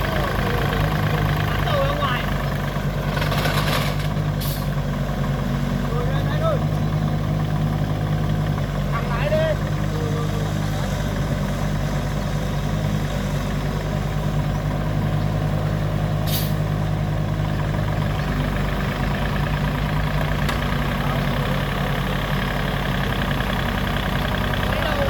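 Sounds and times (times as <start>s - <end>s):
heavy machinery engine running: 0.0s - 25.0s
short hiss: 16.3s - 16.6s.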